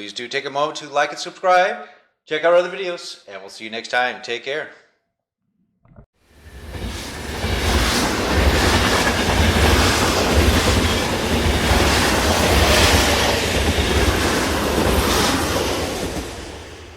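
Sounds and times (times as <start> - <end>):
train running on rails: 6.3 - 16.9.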